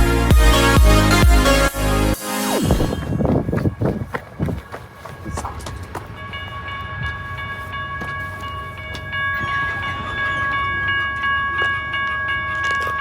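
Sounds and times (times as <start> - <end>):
train rumble: 2.6 - 13.0.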